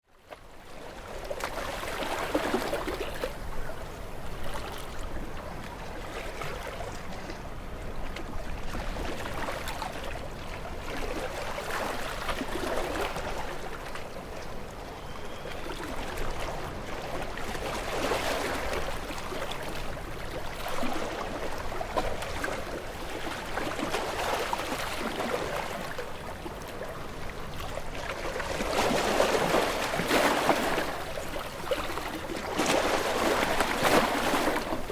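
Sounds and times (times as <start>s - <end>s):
waves breaking against rocks: 15.5s - 34.9s.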